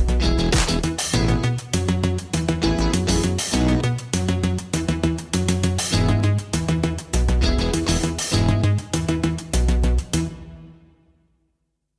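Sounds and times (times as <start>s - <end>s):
plucked guitar over a beat: 0.0s - 1.6s, 2.6s - 3.9s, 5.9s - 6.3s, 7.4s - 8.8s.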